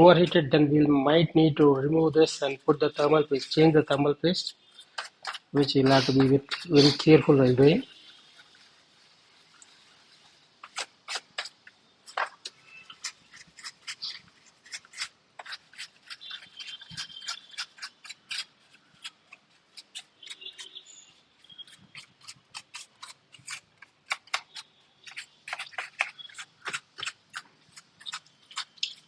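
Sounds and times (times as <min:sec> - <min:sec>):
brush scrubbing inside laptop: 0:04.7 - 0:20.8.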